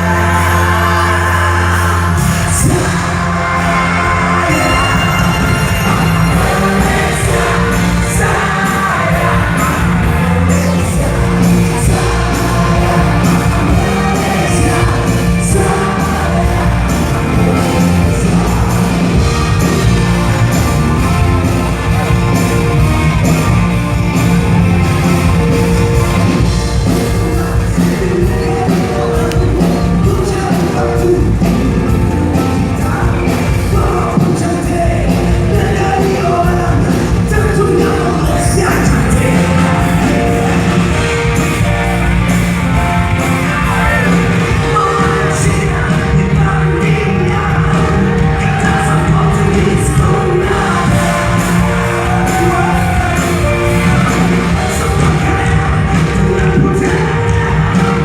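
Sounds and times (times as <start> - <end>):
electric guitar: 0.0 - 58.0
live rock band playing: 0.0 - 58.0
person singing: 0.0 - 58.0.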